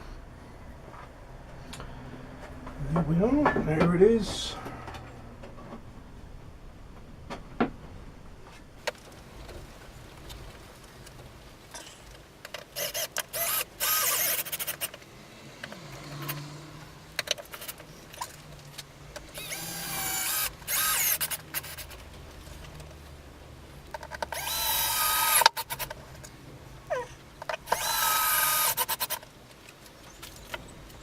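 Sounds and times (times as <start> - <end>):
power drill running: 12.8 - 14.9, 19.4 - 21.9, 24.3 - 25.9, 27.6 - 29.2.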